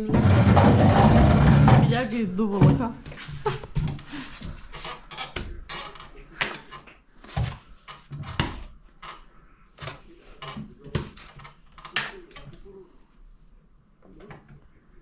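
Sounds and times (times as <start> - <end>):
plastering tools scraping plaster: 0.0 - 9.2.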